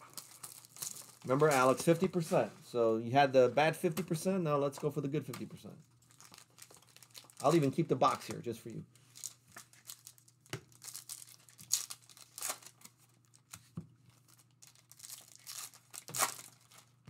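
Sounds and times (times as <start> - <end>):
packaging ripping and crinkling: 0.0 - 2.1, 6.0 - 7.8, 9.1 - 17.0.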